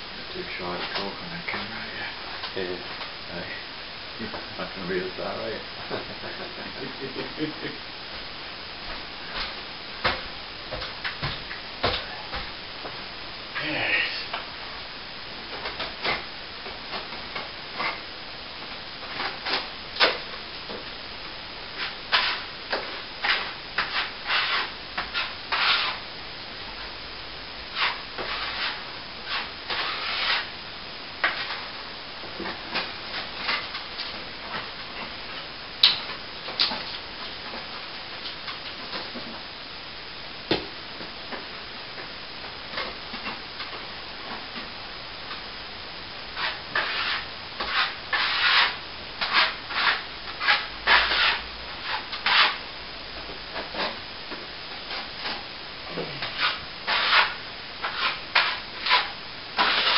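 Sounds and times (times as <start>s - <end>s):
tool scraping plaster wall: 21.8s - 26.0s, 27.7s - 30.5s, 46.4s - 52.6s, 56.2s - 59.9s.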